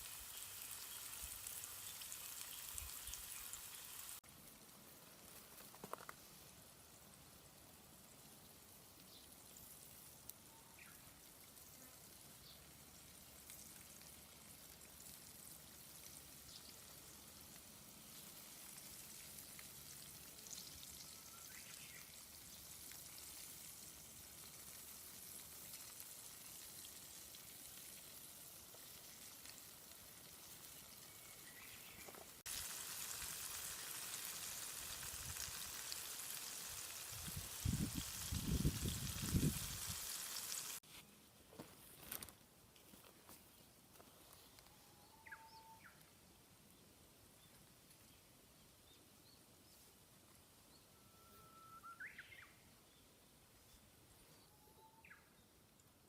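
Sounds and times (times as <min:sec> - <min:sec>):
chicken sizzling in oil: 0:00.0 - 0:05.4, 0:06.2 - 0:40.8.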